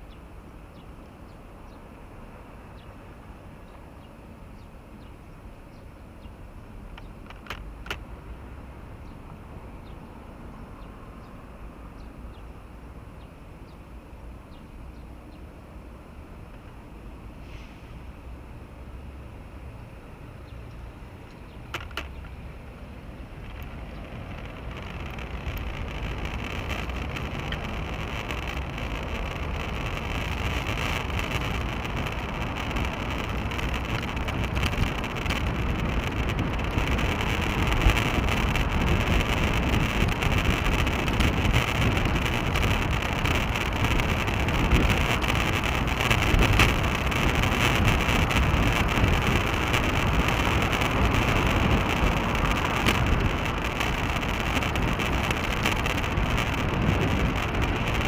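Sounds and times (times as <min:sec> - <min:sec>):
road and tyre rumble: 0:00.0 - 0:58.0
wind rushing over microphone: 0:19.9 - 0:58.0.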